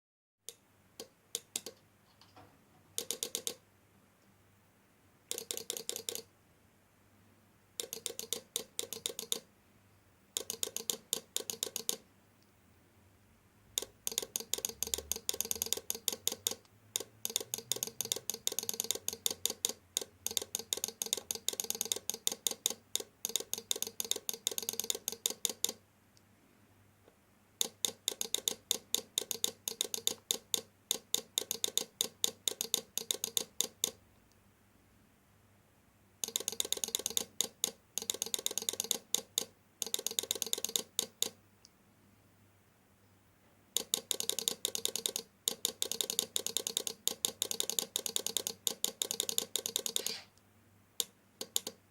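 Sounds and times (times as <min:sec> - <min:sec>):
rapid electrical clicking: 0:03.0 - 0:03.6, 0:05.3 - 0:06.3, 0:07.8 - 0:09.5, 0:10.4 - 0:12.0, 0:13.8 - 0:25.8, 0:27.6 - 0:34.0, 0:36.2 - 0:41.4, 0:43.8 - 0:50.2.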